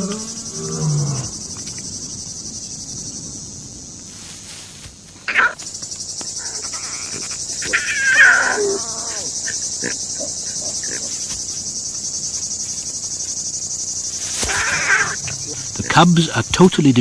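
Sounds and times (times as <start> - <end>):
crickets trilling: 0.0 - 17.0
animal cry sliding downward: 6.4 - 9.4, 14.4 - 16.1.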